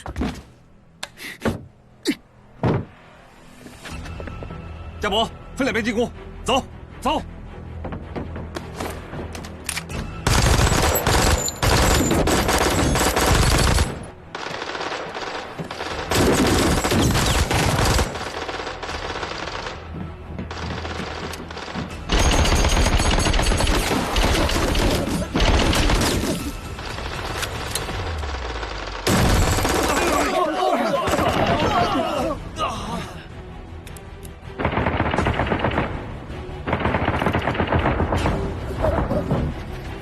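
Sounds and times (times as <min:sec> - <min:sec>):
background music: 0:00.0 - 0:40.0
rapid automatic gunfire: 0:10.3 - 0:19.8, 0:26.8 - 0:30.3, 0:34.6 - 0:35.9, 0:36.7 - 0:38.1.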